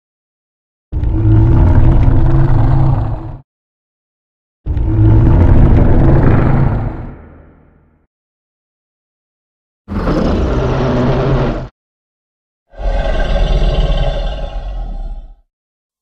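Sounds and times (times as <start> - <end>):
low rumbling monster roar: 1.0 - 3.4, 4.7 - 7.6, 9.9 - 11.7, 12.7 - 15.4.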